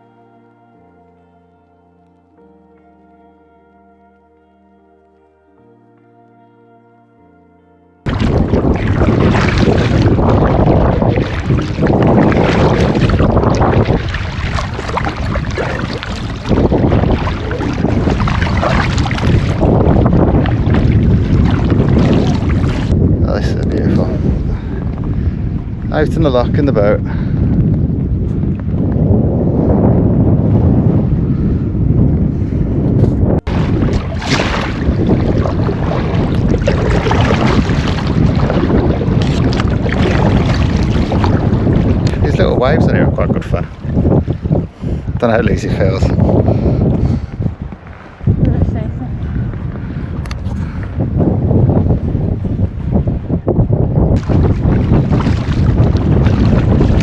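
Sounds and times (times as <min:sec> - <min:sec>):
wind buffeting microphone: 0:08.0 - 0:57.0
water washing against boat hull: 0:08.1 - 0:26.8, 0:33.0 - 0:53.2, 0:53.8 - 0:57.0.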